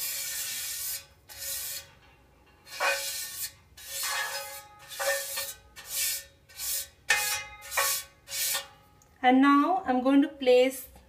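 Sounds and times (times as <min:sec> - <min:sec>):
brush rubbing on metal pan: 0:00.0 - 0:02.0, 0:02.7 - 0:08.7.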